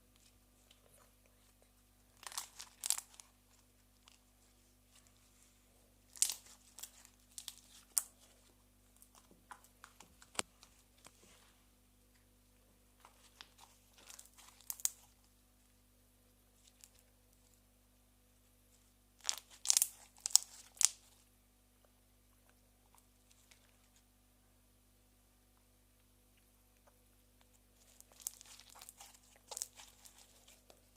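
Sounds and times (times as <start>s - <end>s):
slime crackling and popping: 2.2s - 3.3s, 6.1s - 8.2s, 13.3s - 15.1s, 19.2s - 21.1s, 27.8s - 30.9s.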